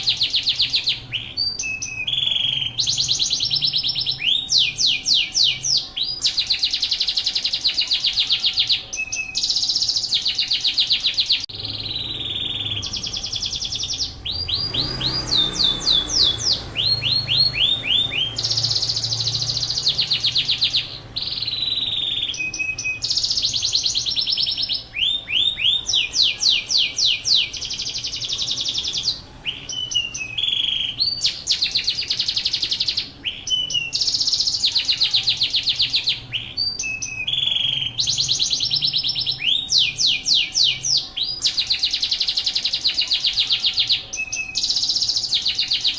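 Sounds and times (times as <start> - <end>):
canary singing trills: 0.0 - 45.9.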